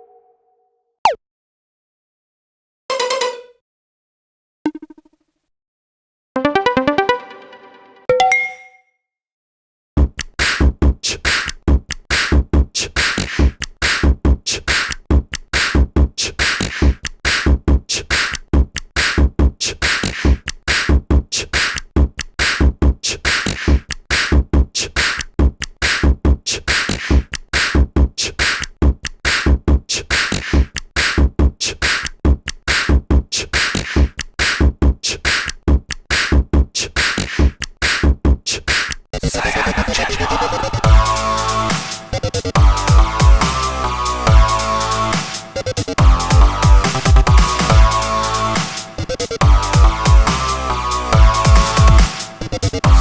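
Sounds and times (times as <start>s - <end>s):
drum machine beat ringtone: 40.8s - 43.6s, 45.6s - 50.5s, 51.1s - 53.0s.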